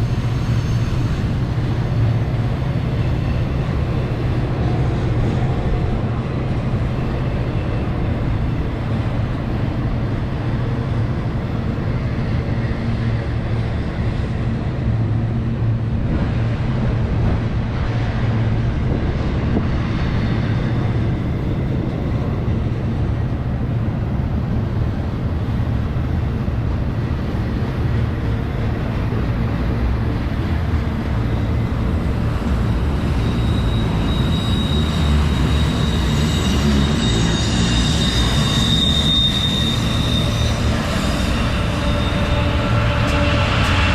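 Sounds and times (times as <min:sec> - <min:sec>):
freight train rumbling past: 0:00.0 - 0:43.9
high-pitched wheel squeal: 0:32.3 - 0:43.9.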